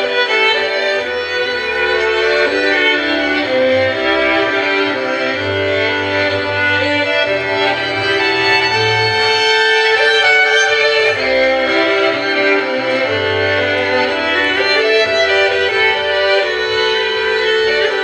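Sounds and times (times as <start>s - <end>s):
bowed strings: 0.0s - 18.0s
slow instrumental music: 0.1s - 18.0s
low bass line: 1.2s - 17.7s.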